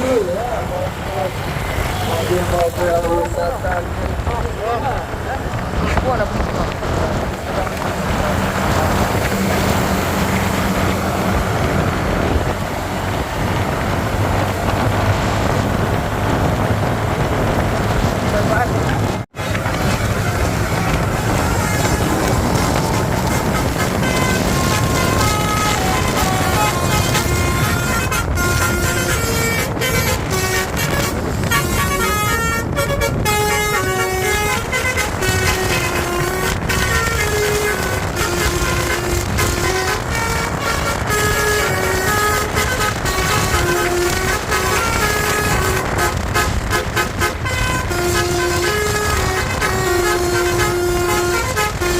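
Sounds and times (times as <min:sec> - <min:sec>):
heavy vehicle engine hum: 0:00.0 - 0:51.9
road and wind noise: 0:00.0 - 0:51.9
multi-tone air horn tune: 0:19.4 - 0:51.9.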